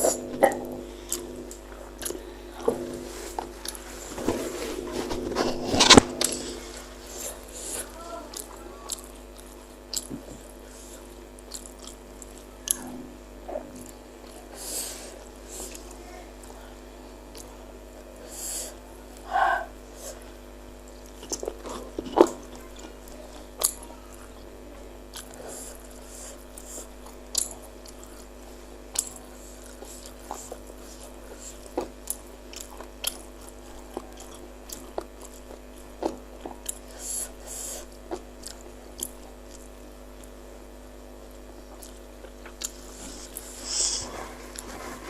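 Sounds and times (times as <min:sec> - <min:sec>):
person chewing: 0:00.0 - 0:15.9, 0:21.0 - 0:24.4, 0:25.1 - 0:28.3, 0:28.9 - 0:40.4, 0:41.6 - 0:45.0.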